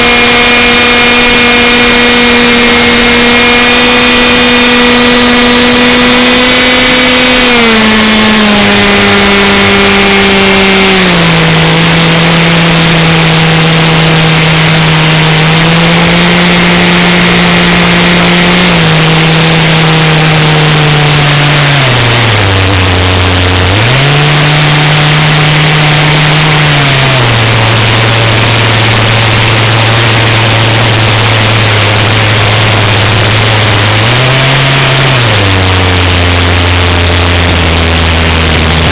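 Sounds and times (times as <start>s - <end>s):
engine running: 0.0s - 38.9s
loud steady rushing noise: 0.0s - 38.9s.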